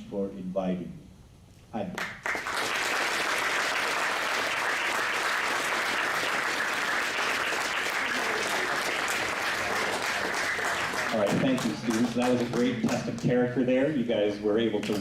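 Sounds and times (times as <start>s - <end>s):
audience applauding: 2.0s - 13.3s.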